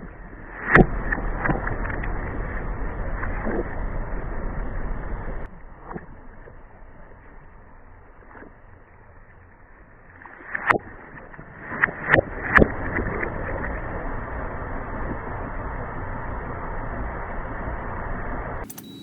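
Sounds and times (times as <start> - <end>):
steady rumble: 0.0 - 18.7.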